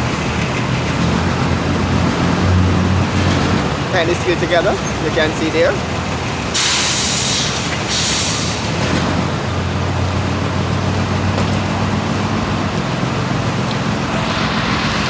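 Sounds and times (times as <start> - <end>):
heavy vehicle engine humming: 0.0 - 15.0
road traffic passing: 0.0 - 15.0
short hiss: 6.6 - 8.7.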